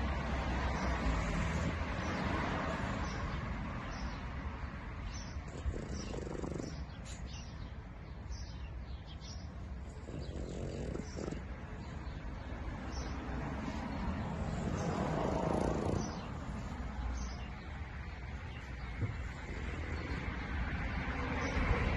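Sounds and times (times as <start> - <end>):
dog snoring: 5.4 - 7.4, 9.8 - 11.9, 14.4 - 16.6, 19.1 - 20.5.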